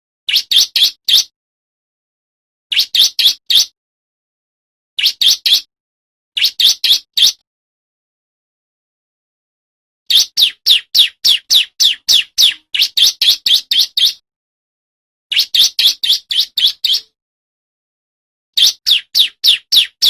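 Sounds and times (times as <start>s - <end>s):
bird singing sharp notes: 10.1s - 14.2s, 18.6s - 20.0s.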